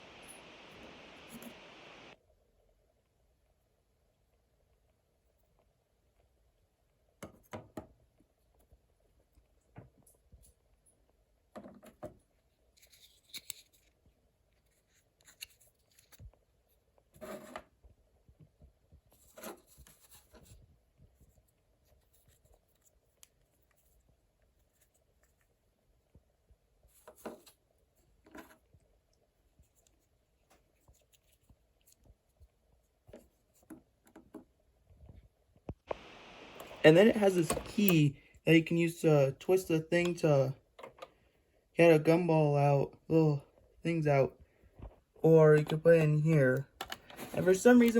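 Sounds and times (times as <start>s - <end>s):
small toy scraping and rubbing: 12.7s - 13.9s, 14.6s - 16.2s, 17.1s - 17.8s, 19.1s - 20.6s, 26.8s - 28.7s, 47.0s - 47.9s.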